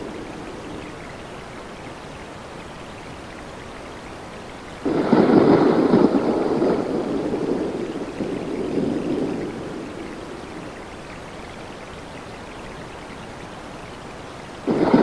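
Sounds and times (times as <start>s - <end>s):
steady rain: 0.0s - 15.0s
thunder clap and rumble: 4.8s - 11.2s, 14.6s - 15.0s.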